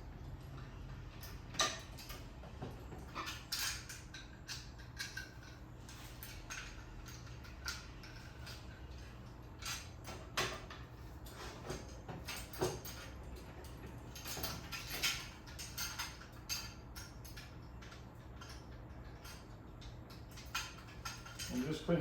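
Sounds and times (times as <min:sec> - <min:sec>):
metal parts clicking and clinking: 0:00.2 - 0:22.0.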